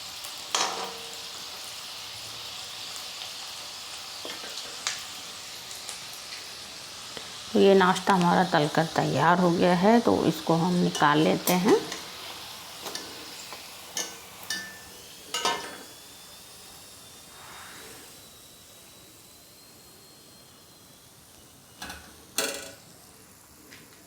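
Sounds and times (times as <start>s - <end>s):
hot oil sizzling: 0.0s - 24.0s
metal spoon clinking on pan: 14.0s - 15.8s.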